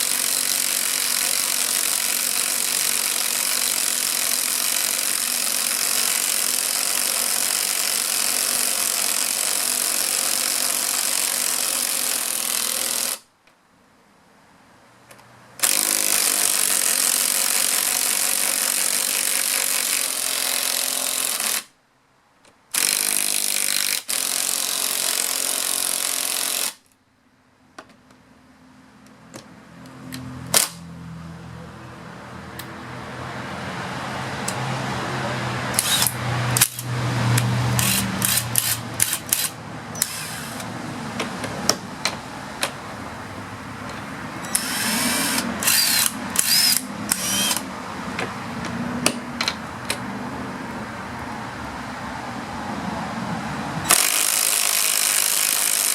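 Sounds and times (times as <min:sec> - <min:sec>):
sharp cracks: 0:30.5 - 0:30.8
impact drivers hammering: 0:35.7 - 0:42.8, 0:43.9 - 0:50.0.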